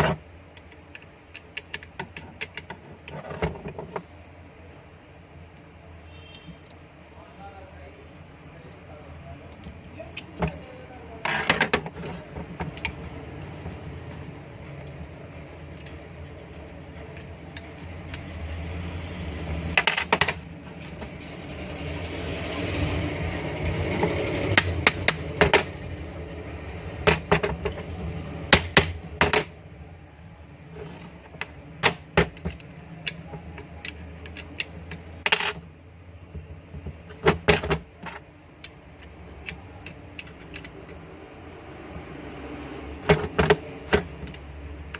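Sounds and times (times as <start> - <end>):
metal parts and tools clinking: 11.2 - 16.3, 16.9 - 18.6, 19.5 - 21.2, 30.8 - 35.8, 36.4 - 42.3.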